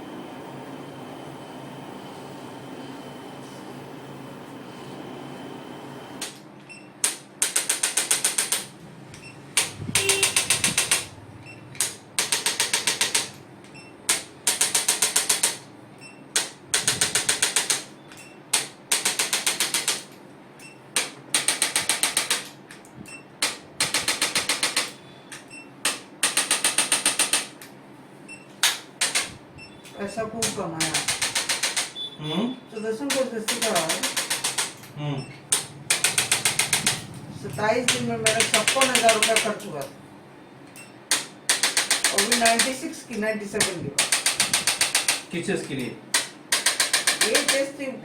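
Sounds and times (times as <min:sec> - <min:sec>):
rapid mechanical clicks: 0:07.0 - 0:11.2, 0:11.8 - 0:13.4, 0:14.1 - 0:15.6, 0:16.3 - 0:17.9, 0:18.5 - 0:20.2, 0:21.0 - 0:22.6, 0:23.4 - 0:25.0, 0:25.8 - 0:27.6, 0:30.4 - 0:32.0, 0:33.1 - 0:34.9, 0:35.5 - 0:37.2, 0:37.9 - 0:39.6, 0:41.1 - 0:42.8, 0:44.0 - 0:47.7.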